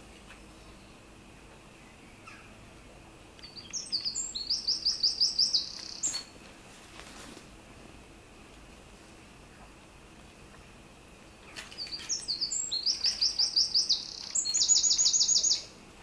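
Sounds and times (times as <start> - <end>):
songbird chirping: 0.0 - 6.5, 10.5 - 15.8
faint outdoor background noise: 0.0 - 16.0.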